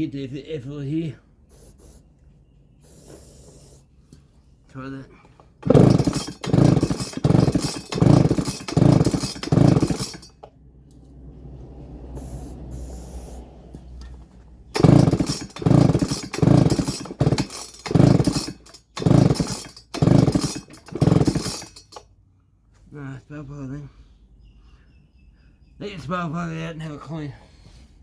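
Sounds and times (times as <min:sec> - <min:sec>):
chainsaw recoil starter pulls: 0:05.6 - 0:10.6, 0:14.7 - 0:22.0.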